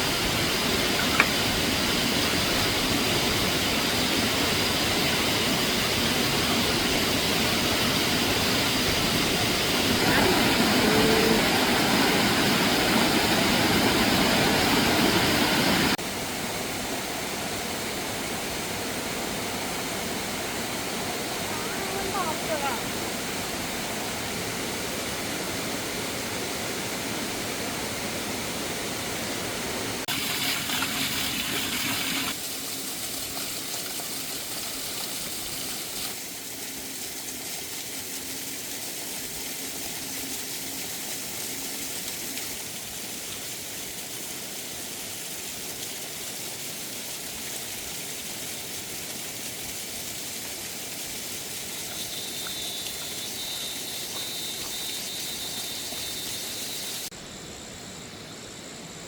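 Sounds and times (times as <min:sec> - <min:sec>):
water rushing: 0:00.0 - 0:57.1.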